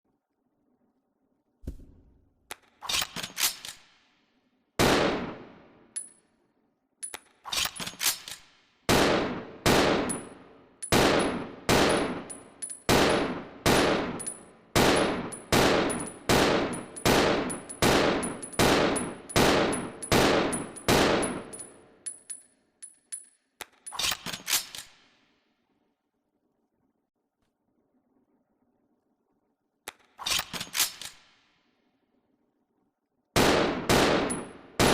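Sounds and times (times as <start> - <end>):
handgun gunshots: 9.0 - 21.7, 33.4 - 34.9.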